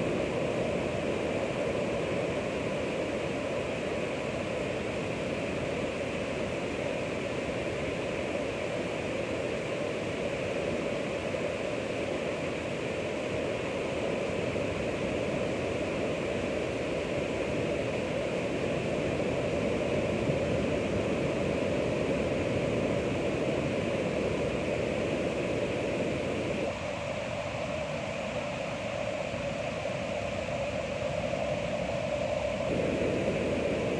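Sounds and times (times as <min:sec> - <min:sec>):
ocean waves washing: 0:32.6 - 0:33.9.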